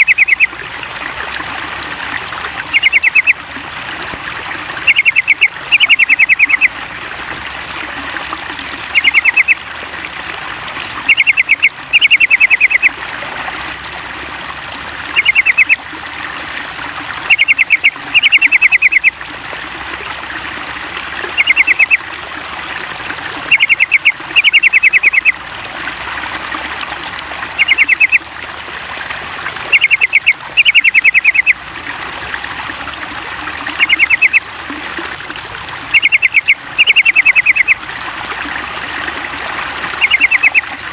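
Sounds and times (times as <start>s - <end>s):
bird song with bright notes: 0.0s - 0.5s, 2.7s - 3.4s, 4.8s - 6.7s, 8.9s - 9.6s, 11.1s - 12.9s, 15.2s - 15.8s, 17.3s - 19.1s, 21.4s - 22.0s, 23.5s - 25.4s, 27.6s - 28.2s, 29.7s - 31.6s, 33.8s - 34.4s, 35.9s - 37.8s, 40.0s - 40.7s
running water trickling: 0.0s - 40.9s.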